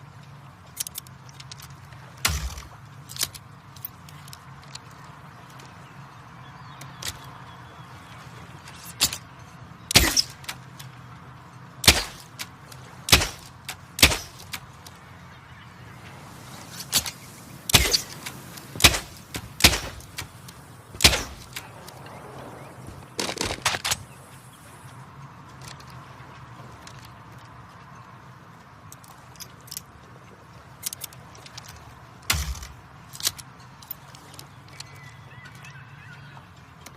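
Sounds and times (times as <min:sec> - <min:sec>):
bow shot cracks: 0:16.9 - 0:18.2, 0:18.8 - 0:20.3, 0:21.0 - 0:21.6.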